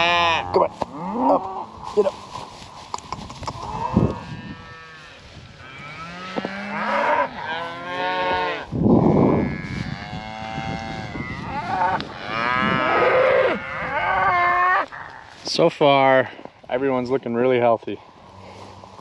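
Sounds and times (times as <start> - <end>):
cattle mooing: 5.6 - 15.2.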